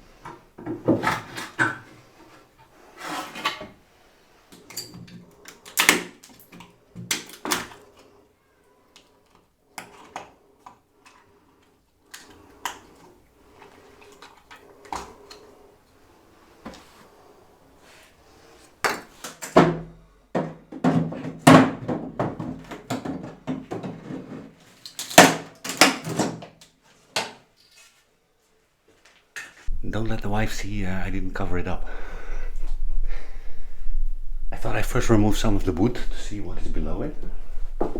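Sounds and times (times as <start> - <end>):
hard objects knocking and clattering: 0.2 - 2.1, 18.8 - 26.5
low rumble: 29.7 - 37.9.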